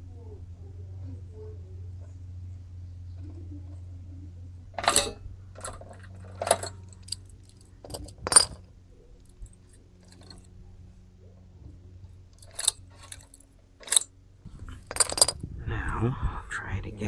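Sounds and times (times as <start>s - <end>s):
metal hand tools clinking: 4.7s - 10.5s, 12.2s - 15.5s.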